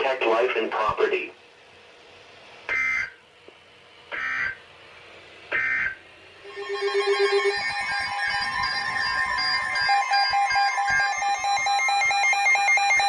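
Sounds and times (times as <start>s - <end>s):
buzzy data bursts: 5.5s - 13.0s
steady alert tone: 5.6s - 13.0s.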